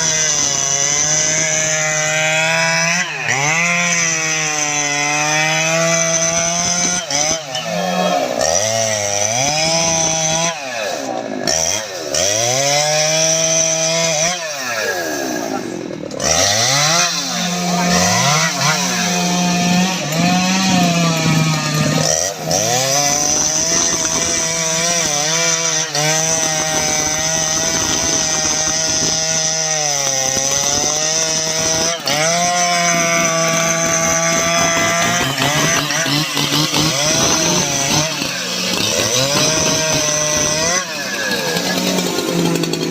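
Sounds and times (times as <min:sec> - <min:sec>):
chainsaw cutting wood: 0:00.0 - 0:42.9.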